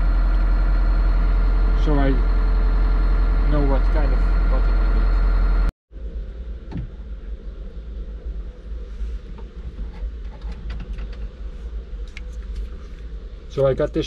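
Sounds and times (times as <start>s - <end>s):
excavator diesel engine idling: 0.0s - 5.7s
low hum: 0.0s - 14.0s.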